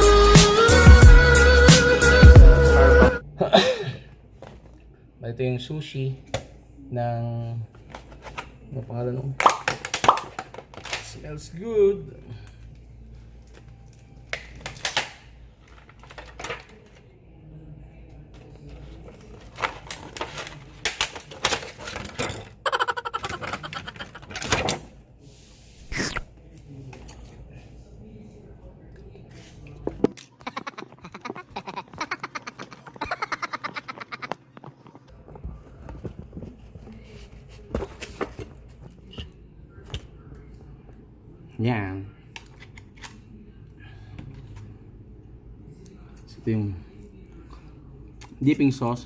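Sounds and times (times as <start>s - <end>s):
faint background voices: 16.1s - 48.4s
eating noises: 22.6s - 24.6s, 25.9s - 26.3s, 30.1s - 35.1s.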